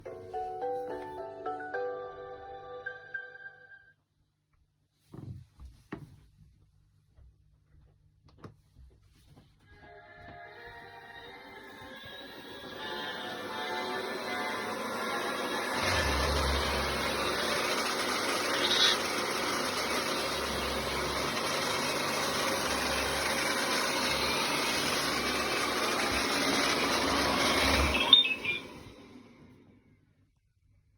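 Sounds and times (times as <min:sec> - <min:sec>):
machine whirring: 0:11.3 - 0:29.5.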